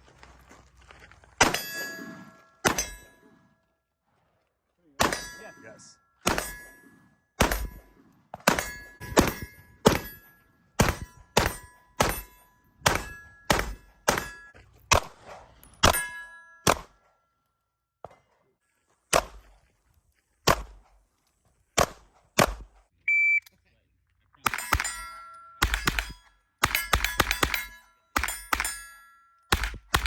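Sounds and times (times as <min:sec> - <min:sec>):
steel plate ringing ding: 0:15.9 - 0:16.7
rapid gunshots: 0:24.5 - 0:25.0, 0:25.6 - 0:28.8, 0:29.5 - 0:30.0.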